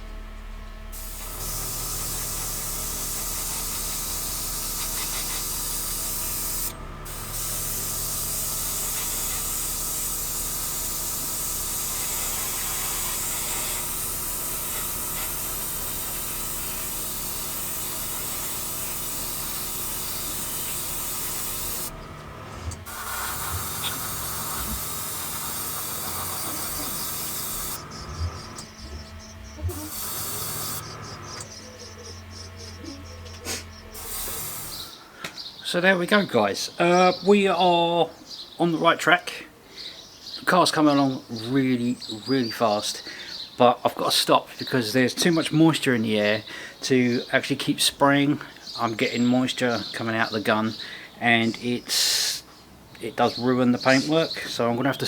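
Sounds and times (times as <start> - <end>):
faint steady hum: 0.0 - 37.1
airbrush spraying: 0.9 - 35.0.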